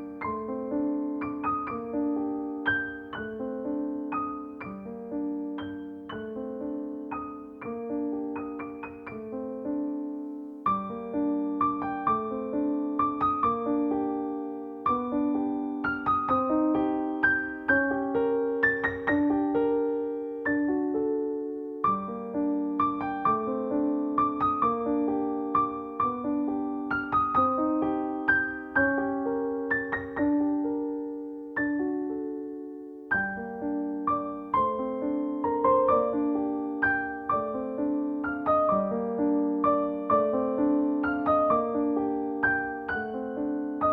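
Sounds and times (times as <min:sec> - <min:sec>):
gentle piano music: 0:00.0 - 0:43.9.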